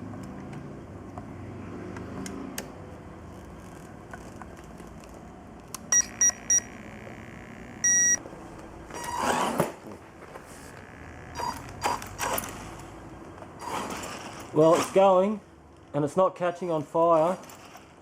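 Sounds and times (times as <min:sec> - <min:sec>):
electronic speed controller beeping: 0:05.9 - 0:08.2
electric motor spinning up: 0:06.3 - 0:08.2.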